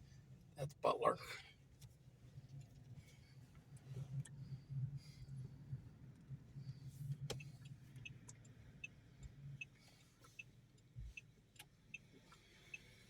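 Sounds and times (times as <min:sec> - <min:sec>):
faint engine hum: 0:00.0 - 0:13.0
turn signal ticking: 0:07.1 - 0:13.0.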